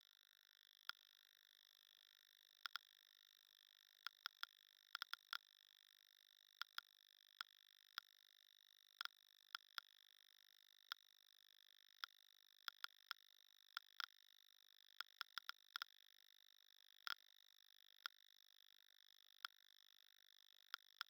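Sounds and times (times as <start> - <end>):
geiger counter clicks: 4.0 - 5.5, 6.6 - 8.2, 12.0 - 14.2, 14.9 - 16.0, 20.6 - 21.0.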